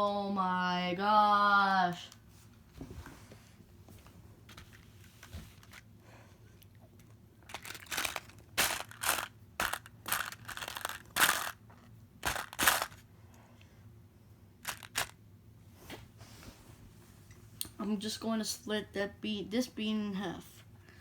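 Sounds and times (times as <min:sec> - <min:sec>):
crinkling crunching handling noise: 0:04.4 - 0:13.0, 0:14.6 - 0:15.2.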